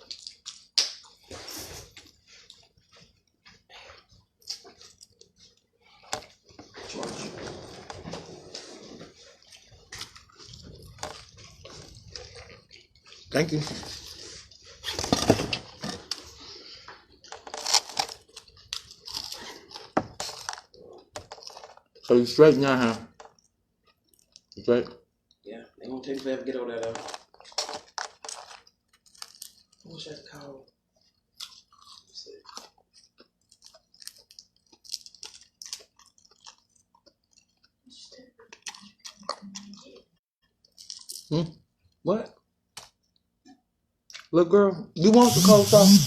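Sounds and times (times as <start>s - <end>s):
chewing crunches: 0.0s - 6.7s, 7.9s - 24.6s, 26.8s - 41.5s
packaging crinkling and rustling: 17.3s - 22.0s, 26.8s - 30.0s.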